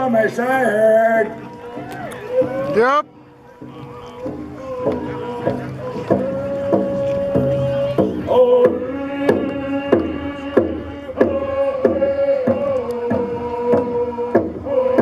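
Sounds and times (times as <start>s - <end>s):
group chanting in unison: 3.4s - 15.0s
steady struck drum beat: 3.6s - 15.0s.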